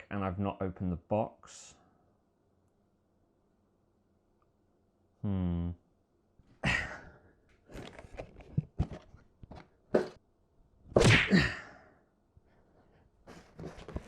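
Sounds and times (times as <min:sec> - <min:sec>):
person grunting: 0:05.2 - 0:05.8, 0:06.6 - 0:07.2, 0:11.0 - 0:11.9.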